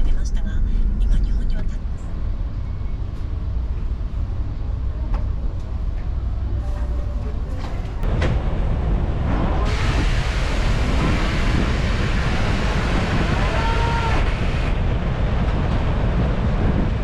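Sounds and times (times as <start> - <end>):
ferry engine rumble: 0.0 - 17.0
sea rushing: 8.0 - 17.0
wind on microphone: 8.0 - 17.0.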